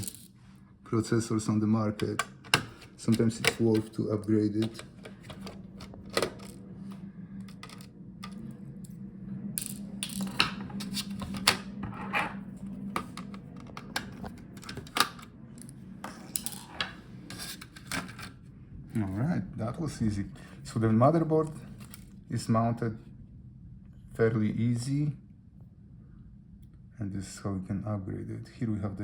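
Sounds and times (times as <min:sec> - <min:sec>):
low steady hum: 0:00.0 - 0:29.0.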